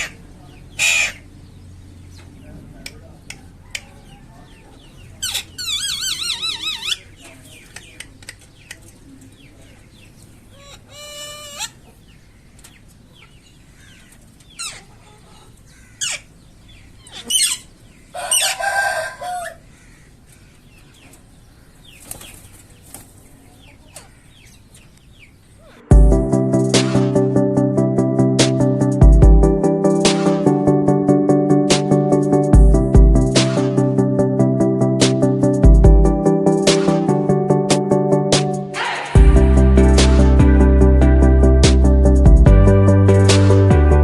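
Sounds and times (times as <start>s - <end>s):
parakeet calling and squawking: 0.0s - 2.2s, 4.8s - 7.3s, 9.8s - 18.9s.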